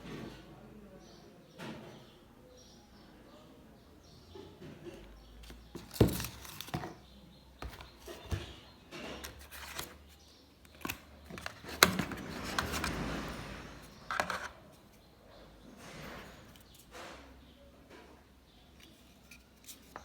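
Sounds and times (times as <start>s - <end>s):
packaging rustling: 9.2s - 14.6s.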